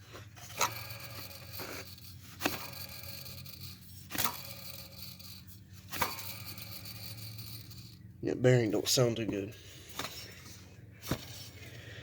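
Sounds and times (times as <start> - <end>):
pulley bearing grinding: 0.2 - 8.1.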